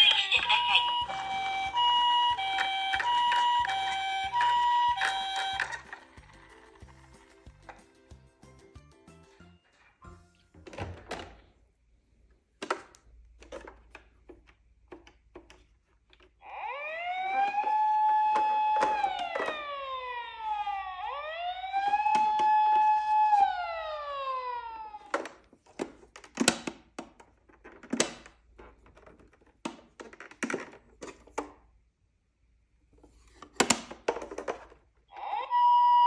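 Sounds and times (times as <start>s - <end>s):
toy electronic siren wailing: 0.0s - 6.0s, 16.4s - 25.1s, 35.1s - 36.0s.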